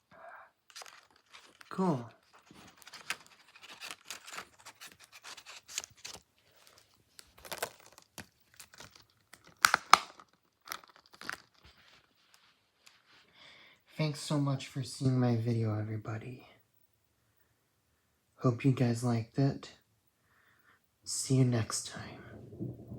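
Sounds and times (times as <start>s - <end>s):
plastic packaging crinkling: 0.6s - 13.1s.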